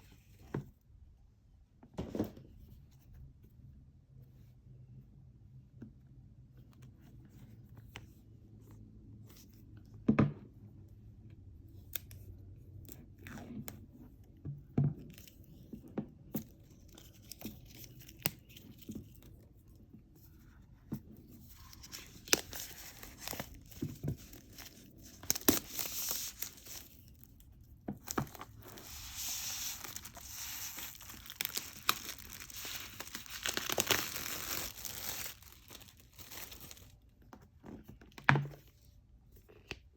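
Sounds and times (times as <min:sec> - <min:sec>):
wrapping crinkling and tearing: 0:16.7 - 0:19.4, 0:21.3 - 0:37.0.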